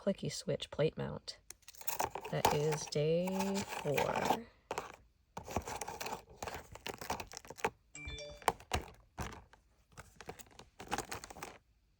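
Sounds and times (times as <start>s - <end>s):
short ringing tone: 8.0s - 8.6s.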